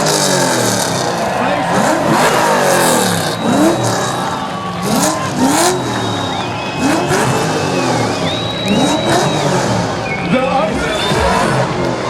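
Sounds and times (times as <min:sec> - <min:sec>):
car engine revving hard: 0:00.0 - 0:12.0.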